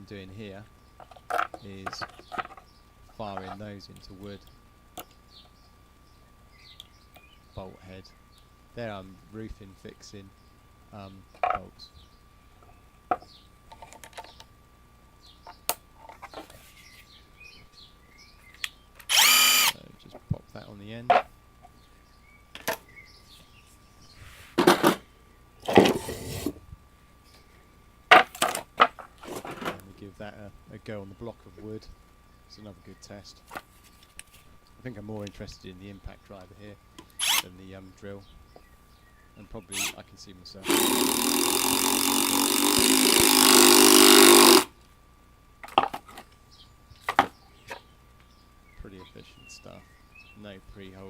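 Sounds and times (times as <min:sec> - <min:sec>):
sharp tool clicks: 0:18.6 - 0:19.8, 0:40.6 - 0:44.7
impact driver hammering into wood: 0:40.6 - 0:44.7.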